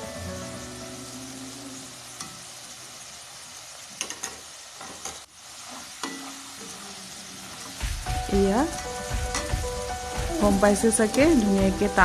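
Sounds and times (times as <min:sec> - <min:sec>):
potatoes sizzling in oil: 0:00.0 - 0:12.0.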